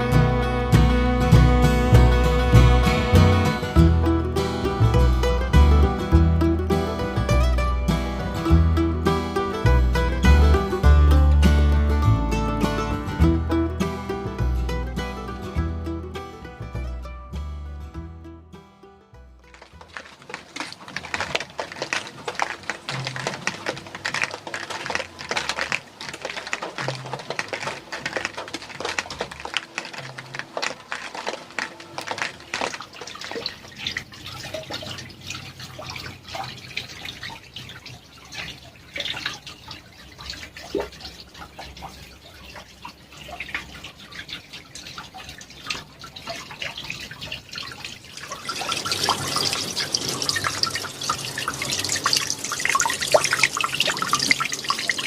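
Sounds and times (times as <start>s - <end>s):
waterfall splashing into pond: 19.5s - 55.0s.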